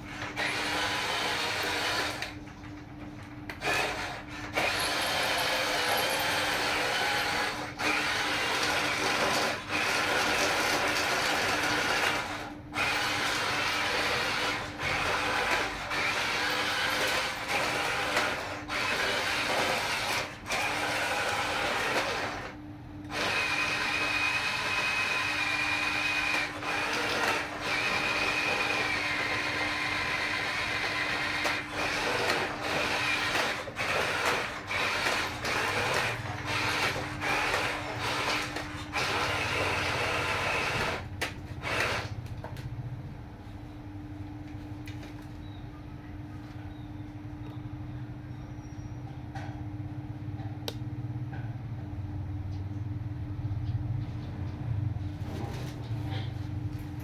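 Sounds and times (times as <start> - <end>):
small electric motors whirring: 3.6 - 22.5, 23.1 - 42.2.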